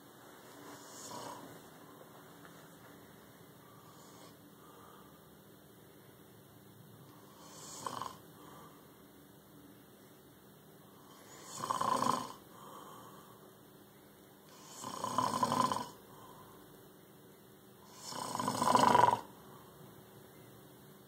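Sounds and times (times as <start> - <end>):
faint breathing: 0.4 - 5.5, 7.1 - 9.1, 12.4 - 13.6, 16.0 - 16.8, 19.3 - 20.0
man snoring: 0.8 - 1.5, 3.7 - 4.4, 7.2 - 8.7, 11.0 - 12.9, 14.5 - 16.0, 17.8 - 19.3.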